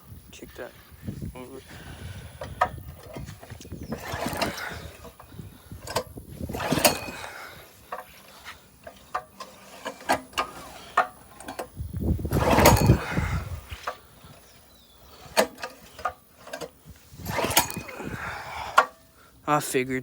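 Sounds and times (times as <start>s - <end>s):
pull-starter whirring: 1.4s - 19.2s
handling clicks and knocks: 2.4s - 18.0s.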